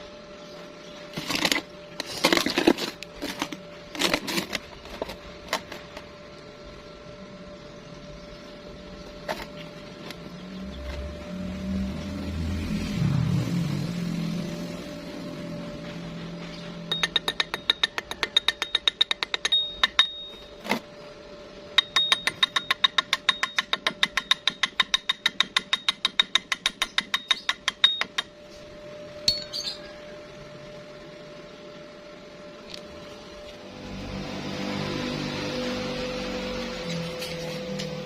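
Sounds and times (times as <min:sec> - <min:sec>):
hammer tapping on steel: 0:16.9 - 0:20.3, 0:21.8 - 0:28.3.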